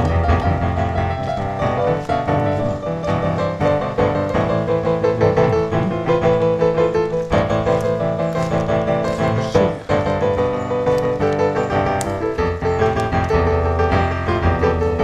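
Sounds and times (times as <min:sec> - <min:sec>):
piano background music: 0:00.0 - 0:15.0.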